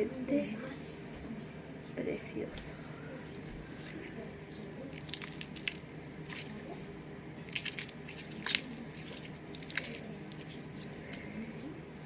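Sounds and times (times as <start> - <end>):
slime squishing: 3.4 - 11.5.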